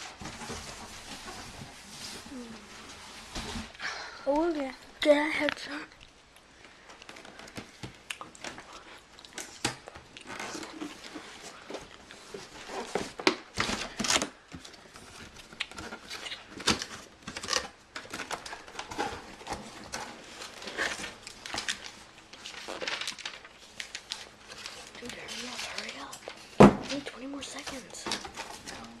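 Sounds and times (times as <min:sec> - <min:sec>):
paper crinkling and tearing: 0:08.4 - 0:29.0.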